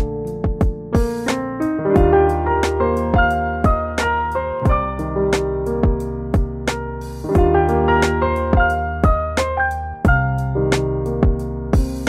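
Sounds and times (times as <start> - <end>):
kick drum beat: 0.0 - 1.3, 1.9 - 2.3, 3.1 - 4.0, 4.7 - 5.0, 5.8 - 6.7, 7.4 - 7.8, 8.5 - 9.4, 10.0 - 10.5, 11.2 - 12.0
piano chords: 0.0 - 12.0.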